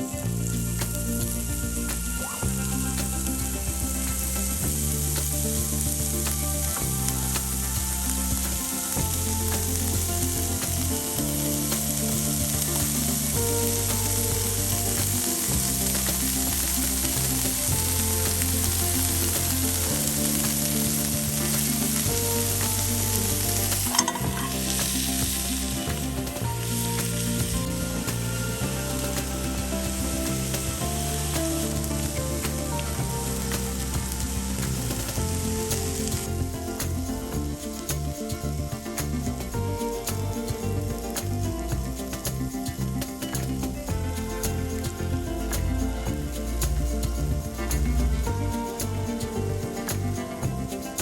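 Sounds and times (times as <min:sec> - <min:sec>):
food sizzling in a pan: 0:00.0 - 0:38.0
background music with bass line: 0:00.0 - 0:51.0.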